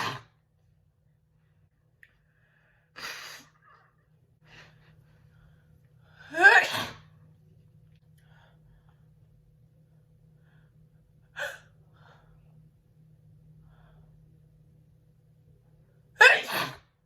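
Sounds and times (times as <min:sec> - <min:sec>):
woman sneezing: 0:06.3 - 0:07.1, 0:16.2 - 0:16.9.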